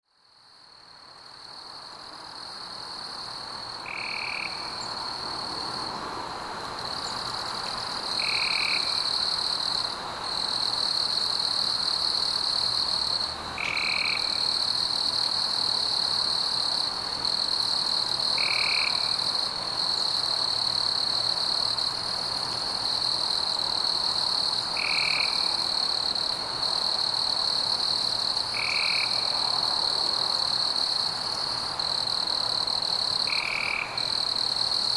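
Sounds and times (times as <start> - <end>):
lower frog call: 3.8 - 4.8, 13.6 - 14.4
frogs trilling: 3.8 - 4.9, 13.6 - 14.5.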